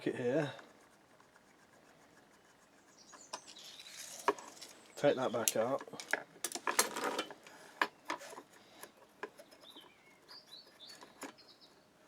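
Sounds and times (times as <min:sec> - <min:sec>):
bird chirping faintly: 0:09.4 - 0:11.9.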